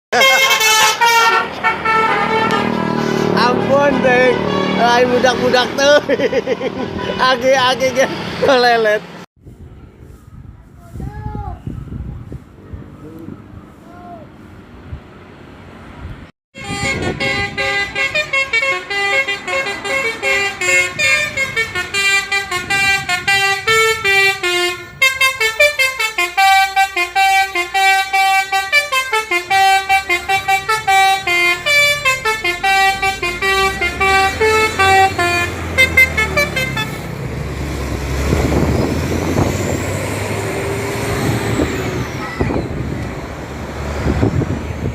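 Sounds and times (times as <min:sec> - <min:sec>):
musical bus horn toots: 0:00.1 - 0:07.4, 0:16.6 - 0:37.2
bus engine running: 0:00.2 - 0:09.2, 0:12.1 - 0:44.9.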